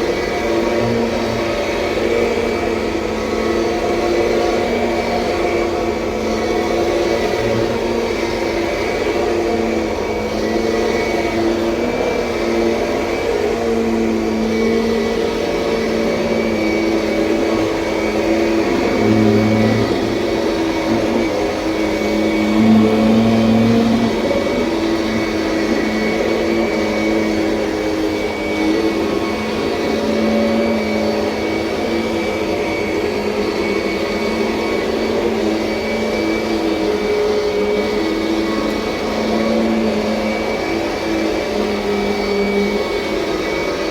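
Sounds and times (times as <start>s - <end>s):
vacuum cleaner running: 0.0s - 43.9s.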